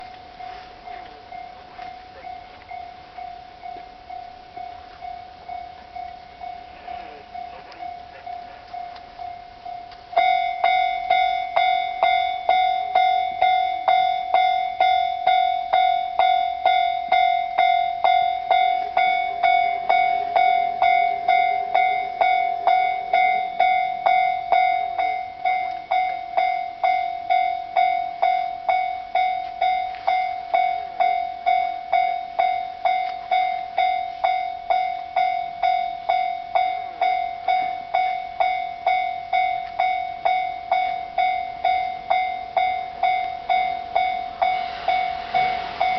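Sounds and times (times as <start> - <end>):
level-crossing warning bell: 0.0 - 45.9
train passing: 0.0 - 45.9.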